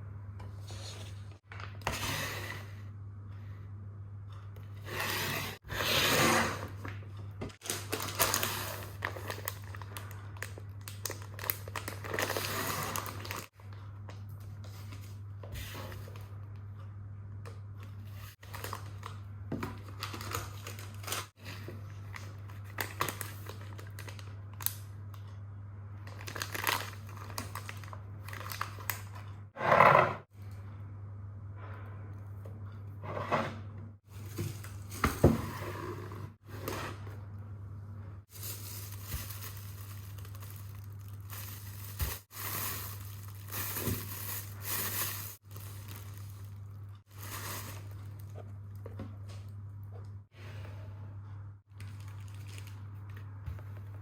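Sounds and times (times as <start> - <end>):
plastic packaging crinkling: 7.6 - 13.5, 18.4 - 24.8, 26.0 - 29.3, 38.3 - 48.3, 51.7 - 53.2.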